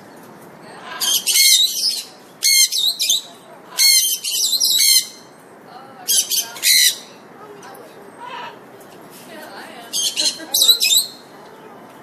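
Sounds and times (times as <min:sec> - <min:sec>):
parrot squawking: 0:00.8 - 0:05.2, 0:06.1 - 0:07.1, 0:09.9 - 0:11.2.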